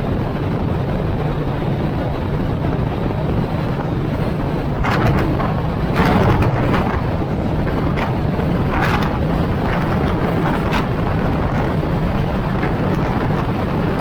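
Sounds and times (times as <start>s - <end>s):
wind buffeting microphone: 0.0s - 14.0s
car driving rumble: 3.5s - 14.0s.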